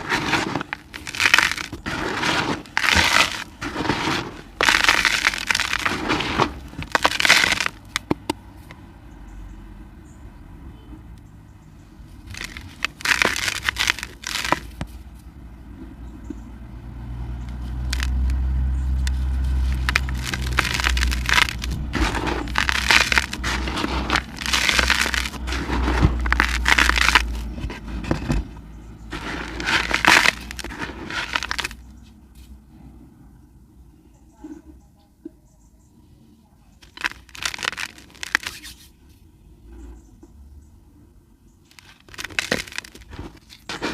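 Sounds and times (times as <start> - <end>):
dry cement crunching: 0.0 - 8.4, 12.1 - 15.3, 17.4 - 32.5, 36.8 - 38.9, 41.7 - 43.9.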